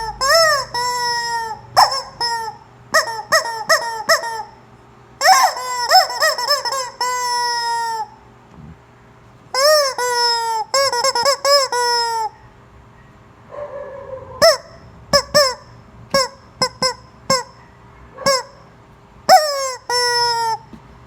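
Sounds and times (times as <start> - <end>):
rubber chicken toy squeaking: 0.0 - 4.6, 5.2 - 8.2, 9.5 - 12.4, 14.4 - 18.7, 19.3 - 20.8.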